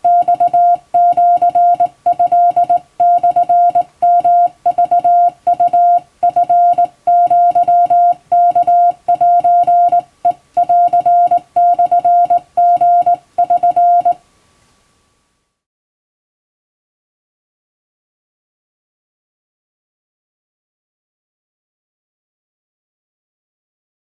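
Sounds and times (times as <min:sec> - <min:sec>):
morse code beeps: 0:00.0 - 0:14.2.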